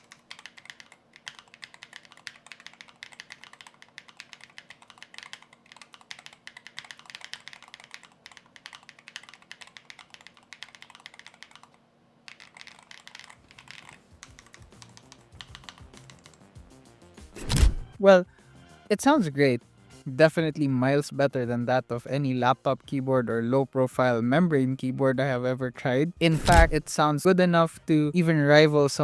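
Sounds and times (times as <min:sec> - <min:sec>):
mechanical keyboard typing: 0:00.0 - 0:16.6, 0:26.4 - 0:26.8.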